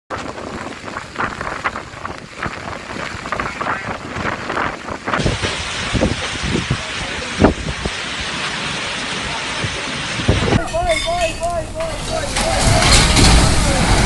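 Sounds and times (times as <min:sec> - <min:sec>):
wind thumps on microphone: 0:00.1 - 0:08.2, 0:09.6 - 0:10.7
rain: 0:00.1 - 0:14.0
storm wind buffeting microphone: 0:00.1 - 0:14.0.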